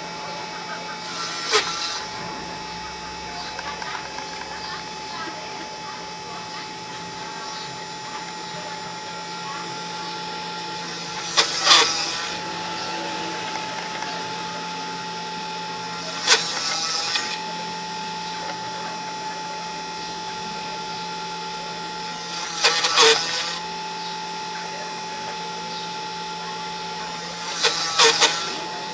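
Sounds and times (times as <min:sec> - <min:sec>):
loud noisy bursts: 0:00.0 - 0:28.9
machine motor whine: 0:00.0 - 0:28.9.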